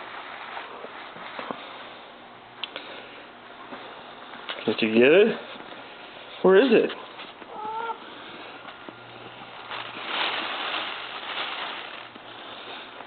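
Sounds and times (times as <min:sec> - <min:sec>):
cat rustling and scuffling with toy: 0:00.0 - 0:01.9, 0:08.2 - 0:13.0.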